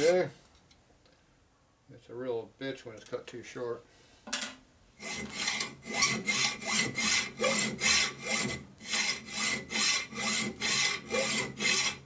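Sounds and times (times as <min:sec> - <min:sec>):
hacksaw sawing metal: 0:05.0 - 0:12.0.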